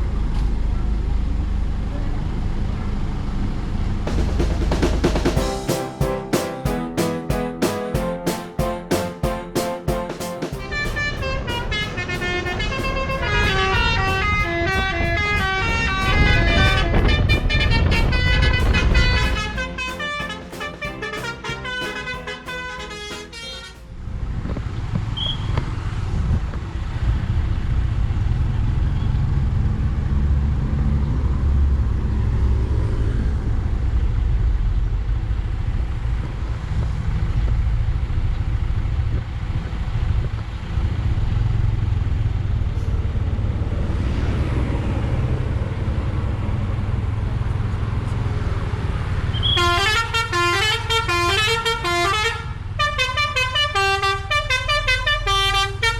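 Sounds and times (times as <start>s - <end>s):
bus air horn playing a tune: 5.4s - 24.0s, 49.4s - 55.9s
steady low rumble: 10.6s - 20.3s.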